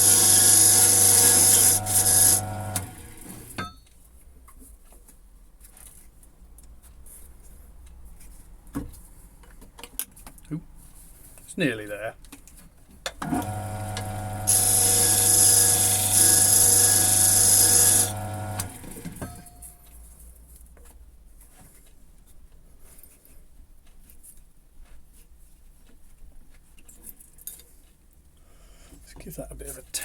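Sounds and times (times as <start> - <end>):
lathe spinning down: 0.0 - 2.9, 13.4 - 18.8
lathe motor humming: 0.0 - 3.0, 13.3 - 18.9.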